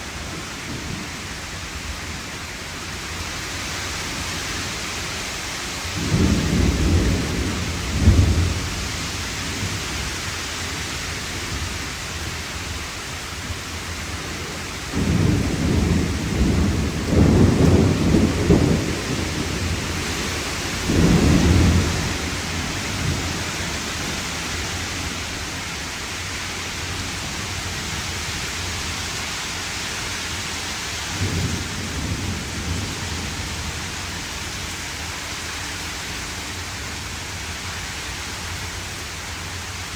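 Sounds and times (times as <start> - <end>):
heavy rain falling: 0.0 - 39.9
thunder rumbling: 5.9 - 12.3, 14.3 - 25.8, 31.1 - 34.8.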